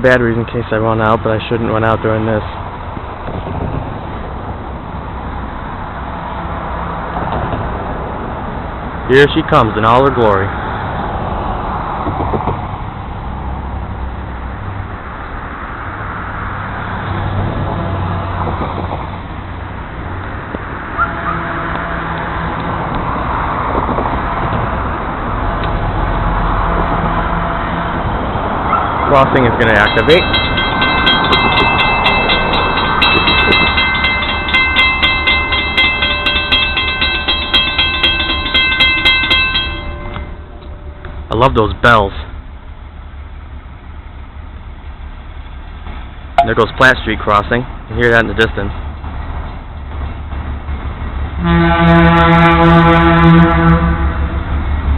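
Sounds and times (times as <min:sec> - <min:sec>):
diesel locomotive passing: 0:00.0 - 0:54.9
crossing warning bells ringing: 0:20.8 - 0:43.5, 0:46.4 - 0:46.9.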